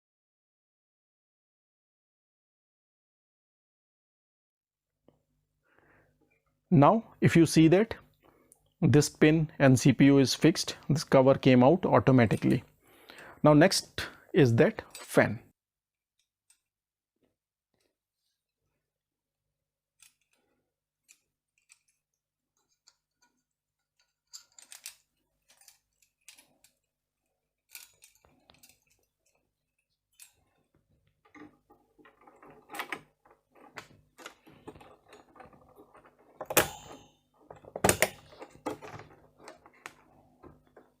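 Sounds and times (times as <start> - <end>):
light plastic clicks and rattles: 22.6 - 26.9.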